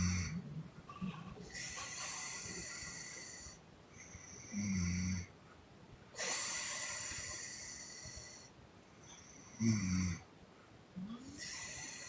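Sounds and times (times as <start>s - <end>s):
woman snoring: 0.0s - 3.6s, 4.3s - 5.3s, 9.4s - 10.3s, 11.0s - 12.0s.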